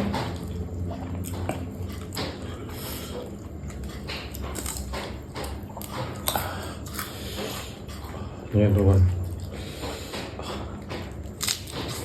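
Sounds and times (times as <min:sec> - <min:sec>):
person chewing food: 0:00.0 - 0:12.0.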